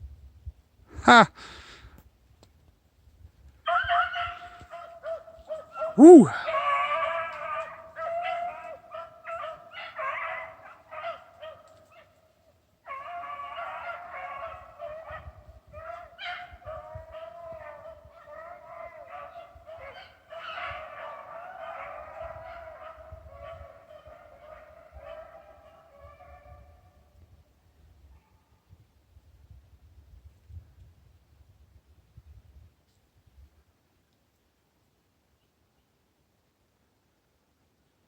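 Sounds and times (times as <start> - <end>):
dogs baying: 3.7 - 12.1, 12.9 - 26.7.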